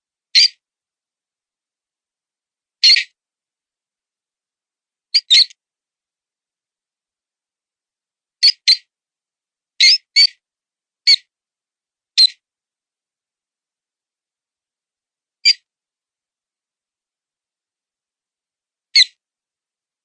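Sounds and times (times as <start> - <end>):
mouse squeaks: 0.4 - 0.6, 2.8 - 3.1, 5.2 - 5.6, 8.4 - 8.9, 9.8 - 10.4, 11.1 - 11.3, 12.2 - 12.4, 19.0 - 19.2.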